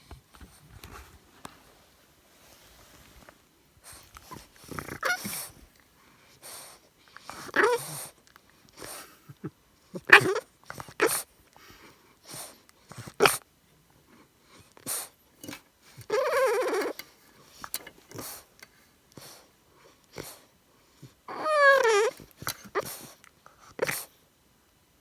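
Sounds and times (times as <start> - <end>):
puppy breathy vocalizing: 3.8 - 5.7, 6.3 - 11.3, 14.6 - 18.5, 20.1 - 24.2
puppy pitched call: 4.9 - 5.5, 7.4 - 8.1, 10.0 - 10.4, 16.1 - 17.0, 21.3 - 22.2.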